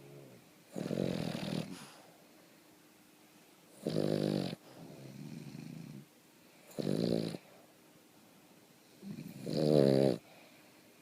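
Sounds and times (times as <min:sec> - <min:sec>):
dog snoring: 0:00.0 - 0:02.0, 0:03.8 - 0:06.1, 0:06.7 - 0:07.5, 0:08.9 - 0:10.4.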